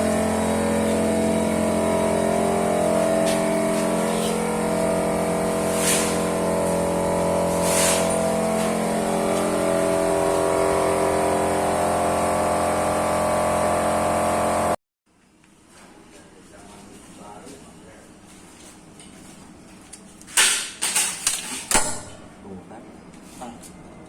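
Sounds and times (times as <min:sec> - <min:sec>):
vacuum pump motor hum: 0:00.0 - 0:14.8
air hissing: 0:05.3 - 0:08.6.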